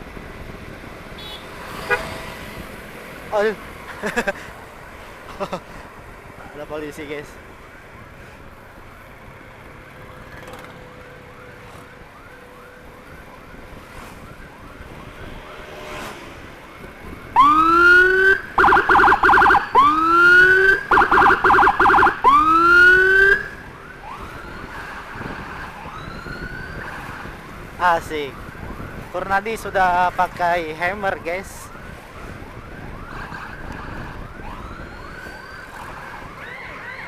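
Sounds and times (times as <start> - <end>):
loud siren whooping and warbling: 10.0 - 16.0, 16.7 - 29.7, 30.5 - 37.0
faint siren quick sweeps: 10.9 - 16.3.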